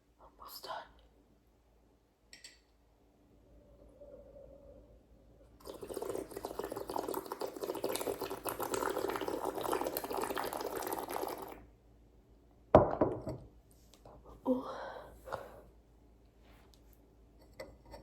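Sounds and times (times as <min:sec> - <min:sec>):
liquid gurgling and bubbling: 0:05.5 - 0:11.6.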